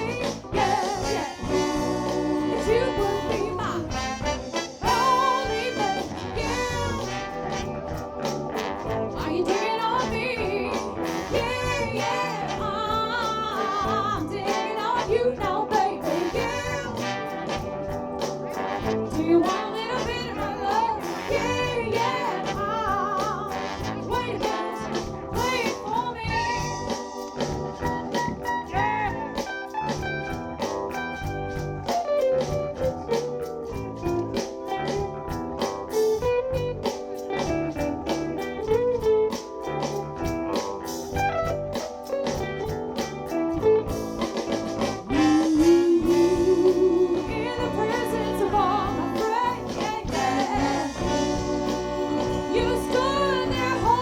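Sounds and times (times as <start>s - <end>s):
lead singer's voice: 0.0s - 7.3s, 9.2s - 17.5s, 19.1s - 27.2s, 45.0s - 54.0s
horn section: 0.0s - 38.1s, 43.3s - 54.0s
bass: 0.0s - 54.0s
drums: 0.0s - 54.0s
keyboards: 0.0s - 54.0s.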